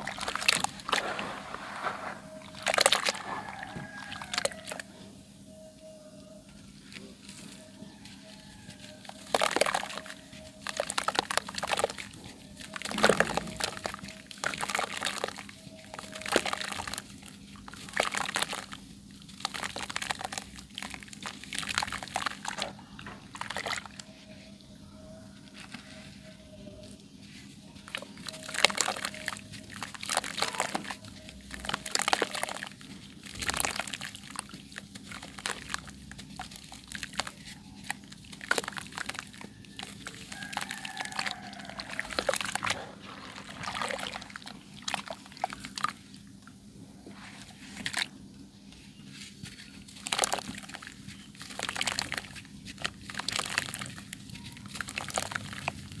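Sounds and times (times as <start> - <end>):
dry sand crunching: 0.0 - 4.6
clay crumbling and crunching: 6.8 - 24.4, 25.5 - 46.1, 49.0 - 56.0.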